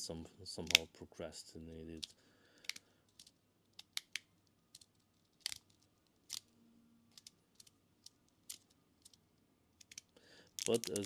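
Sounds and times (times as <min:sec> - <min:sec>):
magnetic pieces snapping together: 0:00.6 - 0:00.9, 0:02.0 - 0:06.5, 0:07.1 - 0:09.2, 0:09.8 - 0:11.0.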